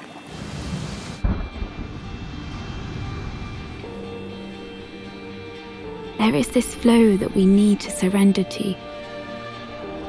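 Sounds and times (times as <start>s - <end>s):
rushing noise: 0.2s - 4.4s
deep boom: 1.2s - 3.9s.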